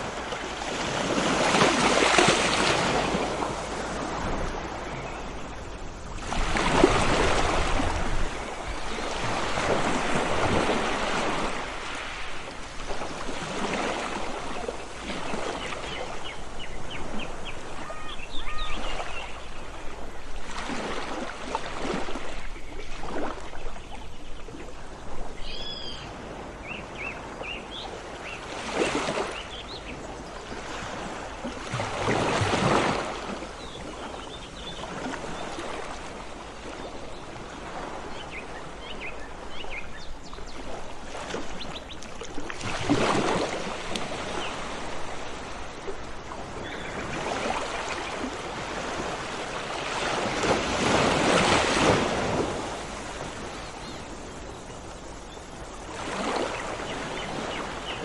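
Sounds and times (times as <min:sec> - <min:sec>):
sea waves washing in: 0:00.0 - 0:17.9, 0:28.2 - 0:58.0
clear bird calls: 0:15.2 - 0:19.7, 0:25.4 - 0:28.5.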